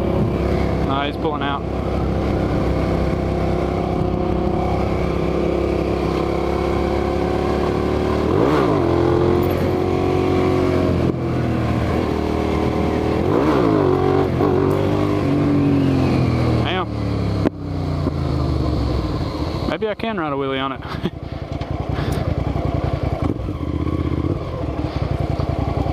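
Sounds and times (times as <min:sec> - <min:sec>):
wind rushing over microphone: 0:00.0 - 0:06.6
motorcycle engine running: 0:00.0 - 0:25.9.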